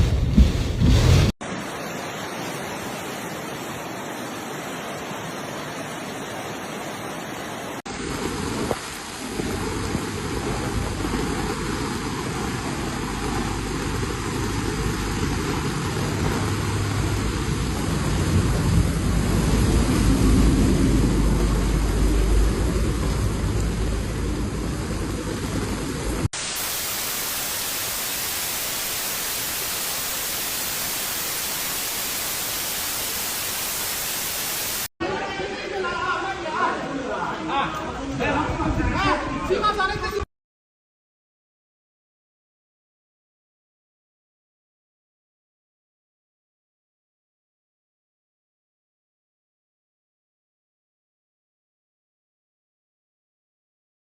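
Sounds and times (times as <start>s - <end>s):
heavy rain: 0.9s - 34.9s
wind on microphone: 8.1s - 26.3s
heavy low rumble: 9.4s - 26.3s.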